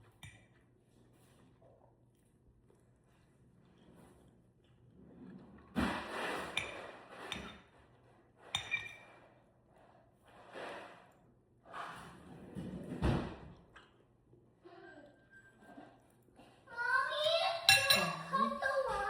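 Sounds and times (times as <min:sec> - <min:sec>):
cutlery clinking against plates: 0:08.5 - 0:09.2, 0:17.6 - 0:18.4.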